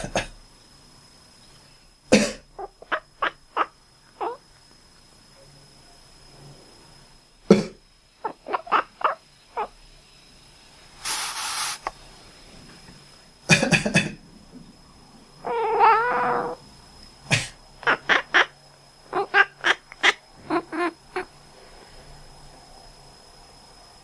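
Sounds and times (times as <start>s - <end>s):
person coughing: 0.0s - 0.4s, 2.1s - 2.4s, 13.5s - 14.2s, 17.3s - 17.6s
cat calling: 2.6s - 4.4s, 8.2s - 9.7s, 15.4s - 16.6s, 17.8s - 18.5s, 19.1s - 21.3s.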